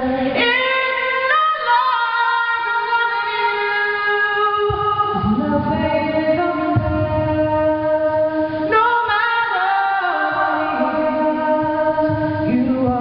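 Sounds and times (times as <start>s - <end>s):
woman singing unaccompanied: 0.0s - 13.0s.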